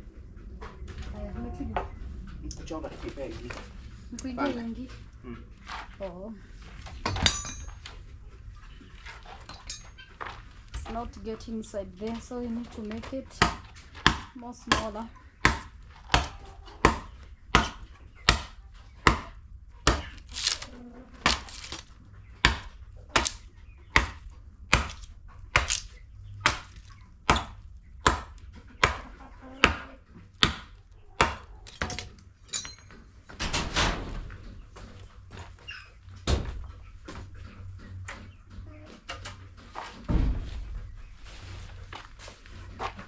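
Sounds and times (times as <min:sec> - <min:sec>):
blade chopping timber: 0:13.4 - 0:29.0, 0:30.4 - 0:32.2
rough scraping: 0:20.1 - 0:22.0.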